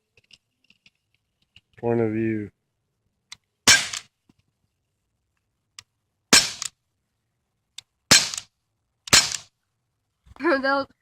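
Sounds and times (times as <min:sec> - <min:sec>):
air gun cracks: 0:03.7 - 0:04.1, 0:06.4 - 0:06.7, 0:08.1 - 0:08.5, 0:09.1 - 0:09.5.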